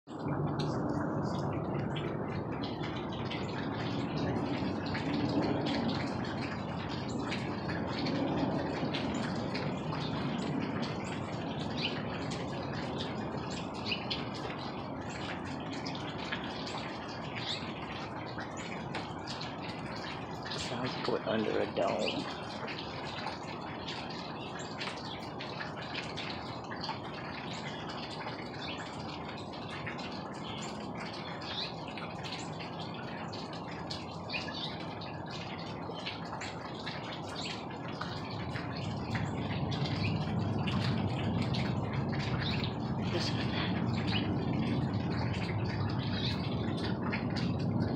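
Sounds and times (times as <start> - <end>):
small birds chirping: 9.1 - 47.0
steady low rumbling: 37.5 - 47.9.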